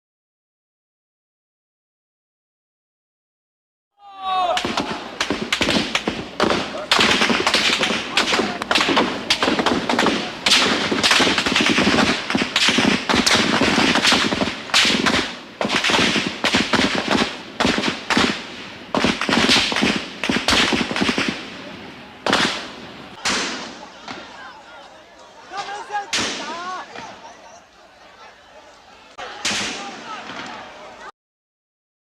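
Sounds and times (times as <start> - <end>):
rifle fire: 4.6 - 23.8, 26.1 - 26.5, 29.4 - 30.5.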